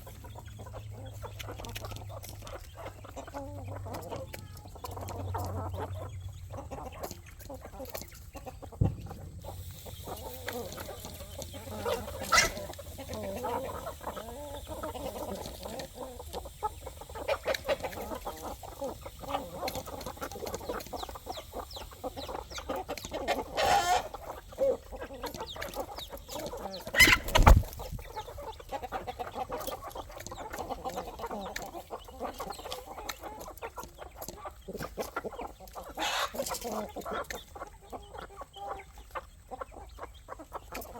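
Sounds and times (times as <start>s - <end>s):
chickens clucking: 0.0s - 40.9s
high chicken call: 11.1s - 14.4s, 23.6s - 24.1s, 27.0s - 27.5s.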